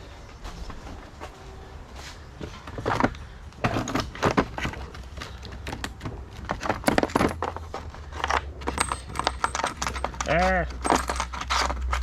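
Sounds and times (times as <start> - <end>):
tools and screws rattling: 2.6 - 12.0.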